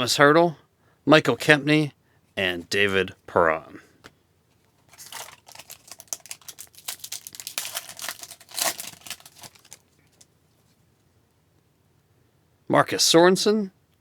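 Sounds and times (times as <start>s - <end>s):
wrapper tearing and crinkling: 4.8s - 10.3s.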